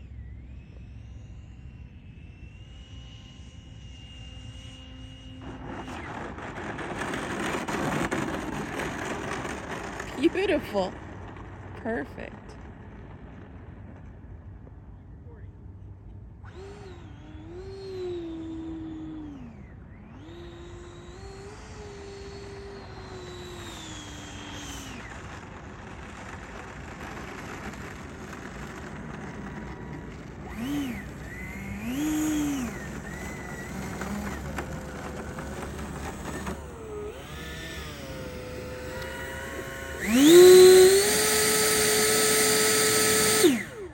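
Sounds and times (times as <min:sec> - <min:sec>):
electric ducted fan whining: 0:00.0 - 0:43.9
wind rumbling: 0:05.4 - 0:15.6, 0:23.0 - 0:42.7.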